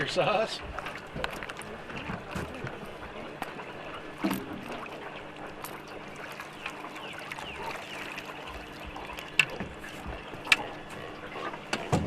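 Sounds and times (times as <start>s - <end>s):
water trickling and splashing: 0.0s - 12.0s.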